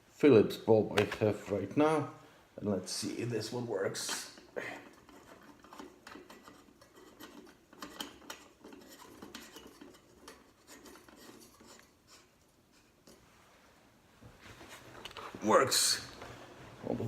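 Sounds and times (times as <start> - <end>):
bulb scraping on metal threads: 4.0 - 13.3.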